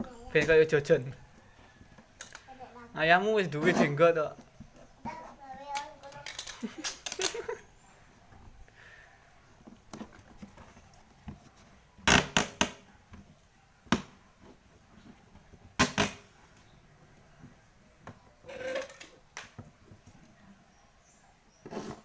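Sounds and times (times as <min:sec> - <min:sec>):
scraping rustle: 0:03.4 - 0:07.6.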